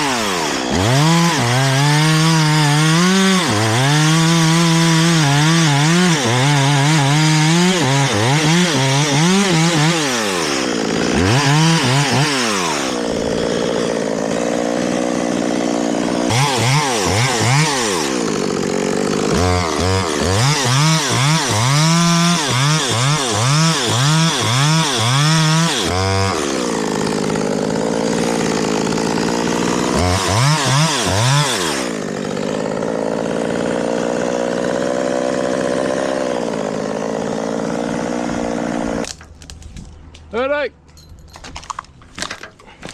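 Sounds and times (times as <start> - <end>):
chainsaw revving and idling: 0.0 - 39.2.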